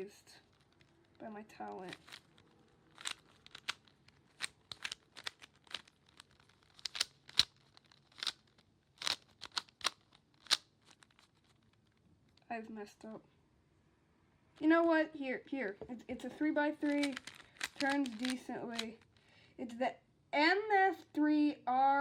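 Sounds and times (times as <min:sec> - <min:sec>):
puzzle cube clicking: 0:01.6 - 0:11.9, 0:16.3 - 0:19.2.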